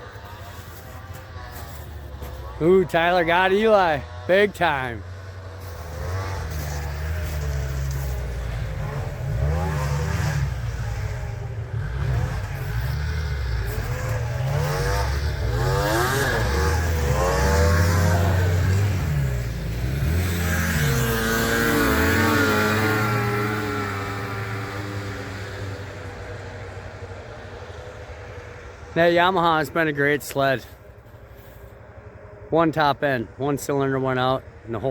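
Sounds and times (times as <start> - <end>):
snowmobile engines revving: 0.0 - 34.9.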